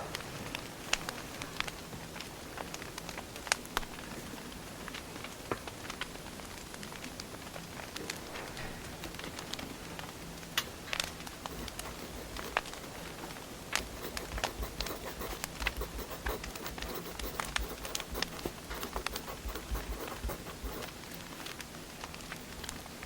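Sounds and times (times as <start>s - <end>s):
soft steady hiss: 0.0s - 23.0s
wood fire crackling and popping: 0.6s - 8.3s.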